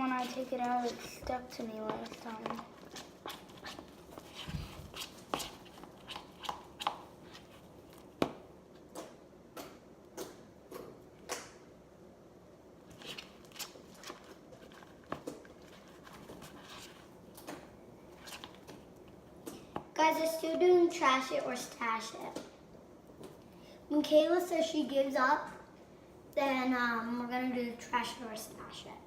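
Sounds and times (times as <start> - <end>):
slime squelching: 0.0 - 11.6, 12.8 - 22.5.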